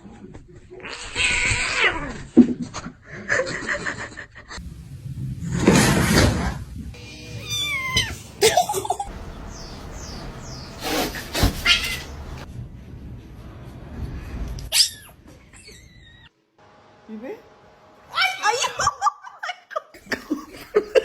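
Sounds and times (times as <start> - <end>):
cat meowing: 7.0 - 8.3, 11.5 - 12.2.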